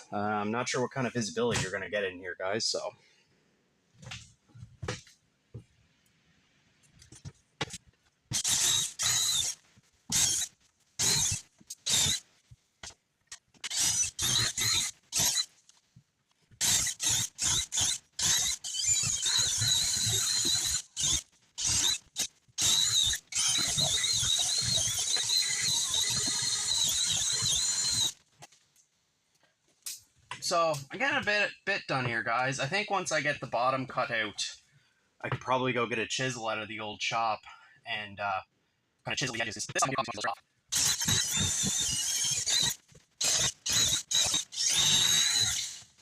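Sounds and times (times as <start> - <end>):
cordless drill boring through wall: 8.3 - 12.3, 13.6 - 15.6, 16.6 - 28.2, 40.7 - 46.0.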